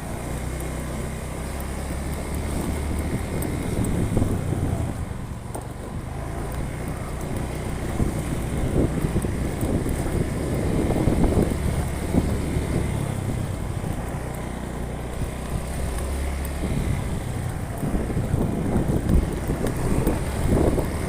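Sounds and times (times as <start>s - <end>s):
vehicle engine running: 0.0s - 21.0s
wind gusting on microphone: 2.7s - 5.4s, 7.8s - 14.2s, 15.2s - 21.0s.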